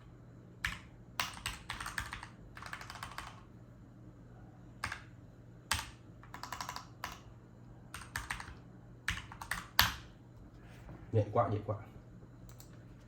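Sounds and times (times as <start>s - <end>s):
mechanical keyboard typing: 0.6s - 3.5s, 4.8s - 5.1s, 5.7s - 7.3s, 7.9s - 10.1s.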